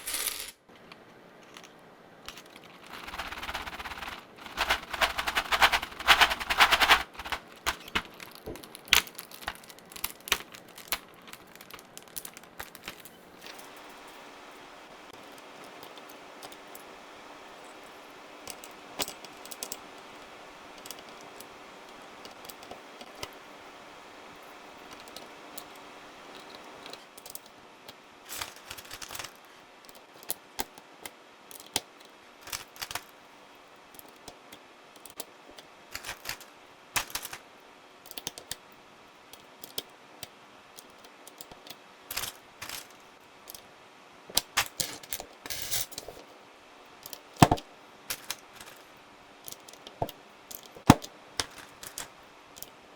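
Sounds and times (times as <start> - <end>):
faint steady hiss: 0.0 - 52.9
mechanical keyboard keys clacking: 2.3 - 13.1, 28.3 - 29.4, 32.4 - 33.1, 36.0 - 37.4.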